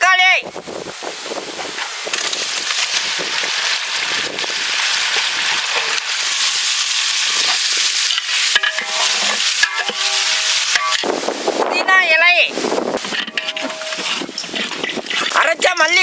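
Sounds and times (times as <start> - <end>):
tomatoes sizzling in hot oil: 1.8 - 11.4, 12.8 - 15.4.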